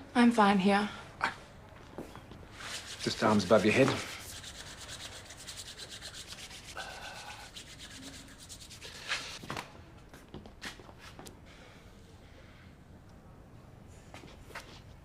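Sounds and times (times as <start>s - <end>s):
scratchy rubbing: 2.5s - 9.4s.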